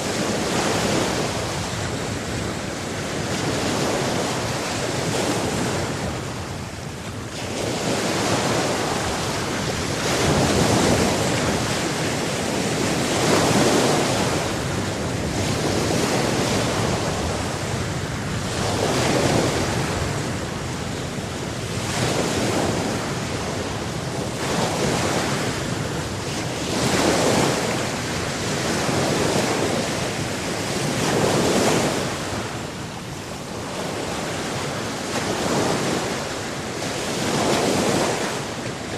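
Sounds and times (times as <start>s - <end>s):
waves breaking on shore: 0.0s - 38.9s
wind: 0.0s - 38.9s.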